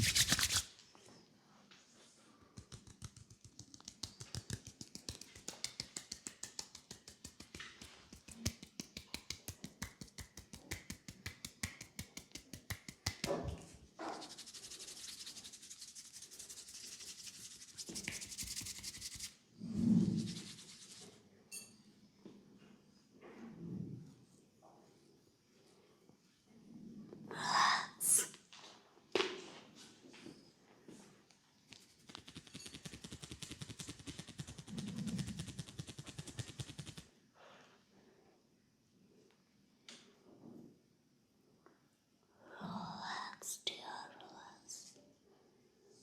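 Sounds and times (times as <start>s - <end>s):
rapid tapping on head: 2.4s - 13.6s, 16.5s - 19.3s, 31.7s - 37.1s
rubbing hiss: 2.6s - 19.4s.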